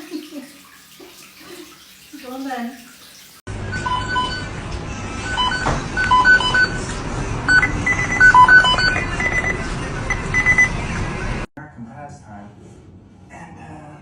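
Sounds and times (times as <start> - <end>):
short electronic beeps: 5.2 - 6.8, 7.5 - 10.8.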